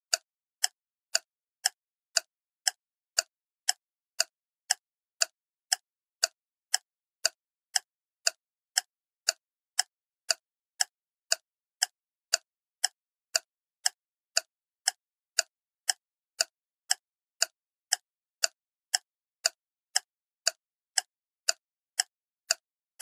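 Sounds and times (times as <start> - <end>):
steady ticking clicks: 0.1 - 23.0.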